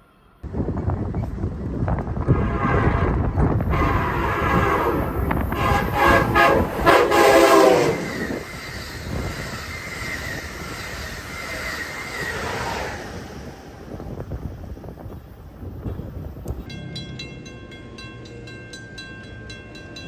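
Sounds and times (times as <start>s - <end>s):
train rumbling past: 0.0s - 20.0s
train air horn blasts: 2.2s - 8.5s.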